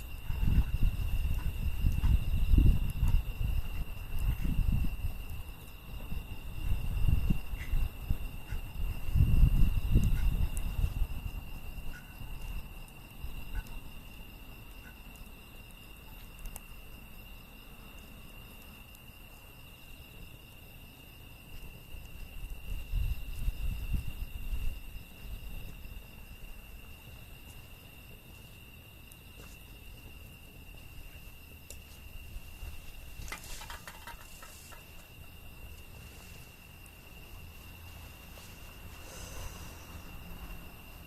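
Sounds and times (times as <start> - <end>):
crickets trilling: 0.0 - 41.0
wood fire crackling: 0.0 - 41.0.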